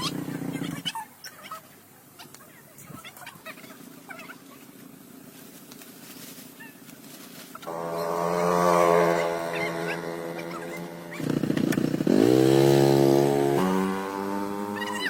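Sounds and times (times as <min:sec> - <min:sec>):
motor engine running: 0:07.6 - 0:15.0.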